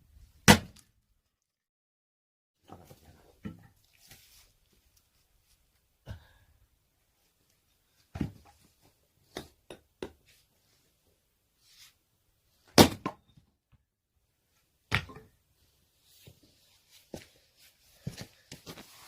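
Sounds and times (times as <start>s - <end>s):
axe splitting firewood: 0.4s - 0.9s, 12.7s - 13.3s.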